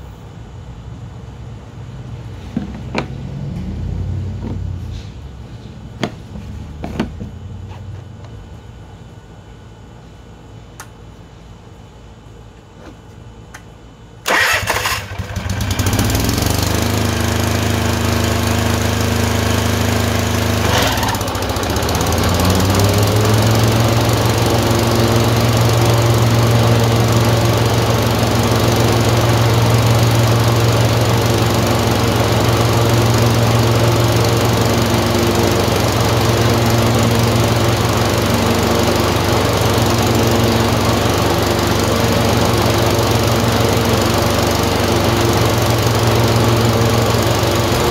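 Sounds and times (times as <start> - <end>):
engine starting and running: 14.2 - 47.9.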